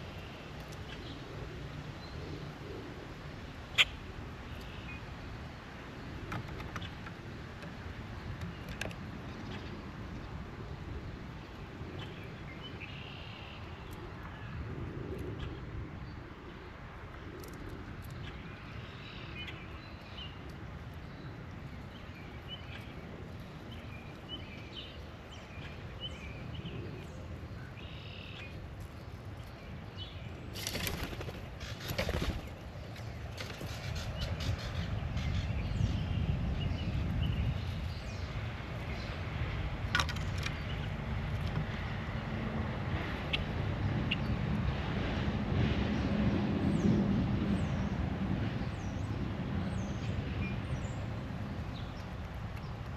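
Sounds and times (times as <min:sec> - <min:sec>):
wind rumble on microphone: 0:13.6 - 0:52.9
birds chirping: 0:17.4 - 0:41.9
bird wingbeats: 0:30.5 - 0:34.1.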